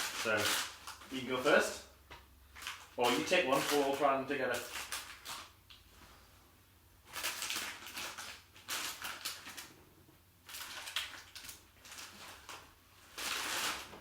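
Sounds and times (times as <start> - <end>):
snack bag rustling: 0.0 - 1.8, 2.5 - 5.6, 7.0 - 9.8, 10.4 - 14.0.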